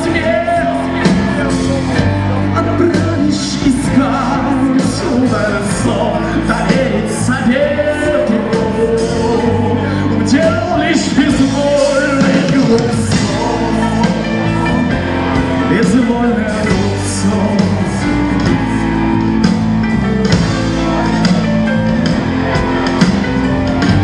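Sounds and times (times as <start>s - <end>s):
live rock band playing: 0.0s - 24.0s.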